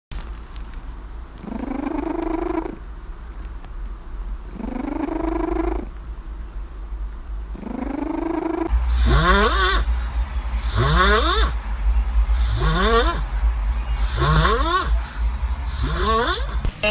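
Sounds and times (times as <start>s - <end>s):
low steady hum: 0.1s - 16.9s
cat snoring: 1.4s - 2.8s, 4.5s - 5.9s, 7.5s - 9.9s, 10.6s - 11.6s, 12.4s - 13.2s, 14.1s - 15.0s, 15.7s - 16.6s.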